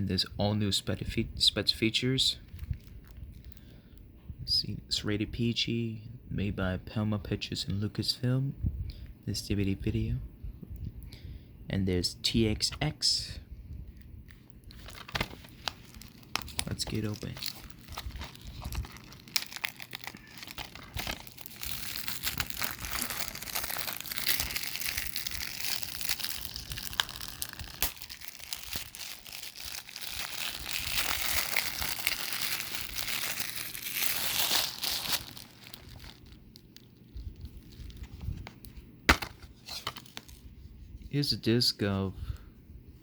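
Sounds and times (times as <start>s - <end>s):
plastic shrink wrap crinkling: 2.4s - 3.7s, 13.9s - 40.4s.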